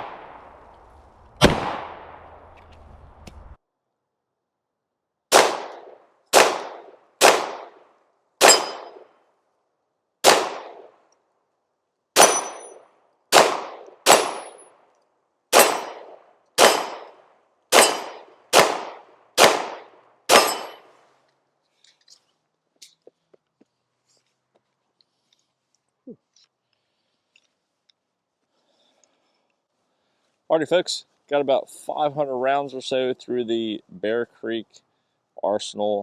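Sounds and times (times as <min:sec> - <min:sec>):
pistol shots: 0:01.4 - 0:02.2, 0:05.3 - 0:07.8, 0:08.4 - 0:09.1, 0:10.2 - 0:10.9, 0:12.2 - 0:14.6, 0:15.5 - 0:20.9.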